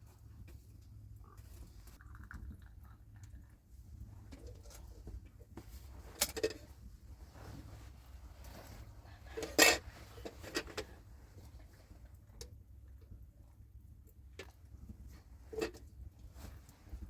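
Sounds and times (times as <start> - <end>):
pots and dishes clattering: 9.3 - 10.9.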